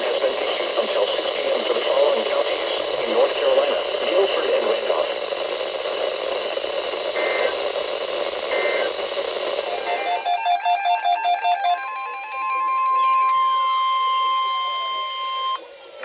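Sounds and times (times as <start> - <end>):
radio static hiss: 0.0 - 16.0
steady warning alarm tone: 9.6 - 16.0
warbling digital data tones: 9.6 - 16.0.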